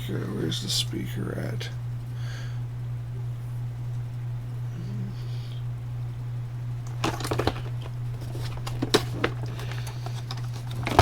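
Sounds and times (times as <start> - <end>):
low electrical hum: 0.0 - 11.0
electronic parts and boxes rattling: 6.8 - 11.0.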